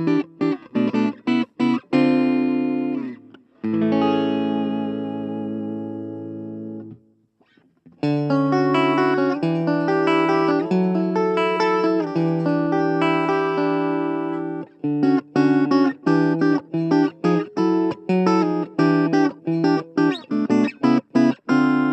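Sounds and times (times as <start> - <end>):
clean electric guitar chords: 0.0 - 7.0, 7.9 - 21.9.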